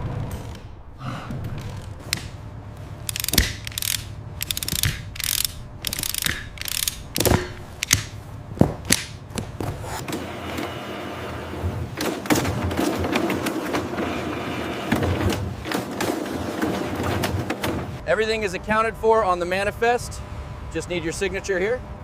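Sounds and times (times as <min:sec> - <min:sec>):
low hum: 0:00.0 - 0:09.6
machinery clattering: 0:03.0 - 0:09.2.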